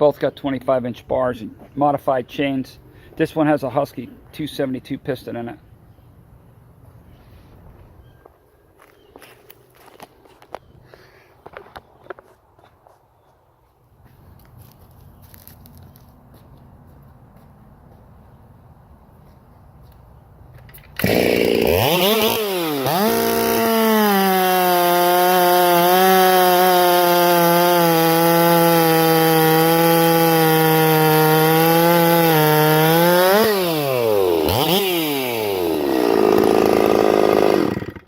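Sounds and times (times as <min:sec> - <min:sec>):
chainsaw revving: 0:21.0 - 0:38.0.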